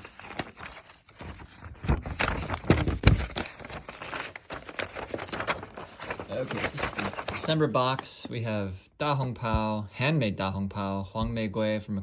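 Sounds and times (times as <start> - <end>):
paper and plastic rustling: 0.0 - 8.4.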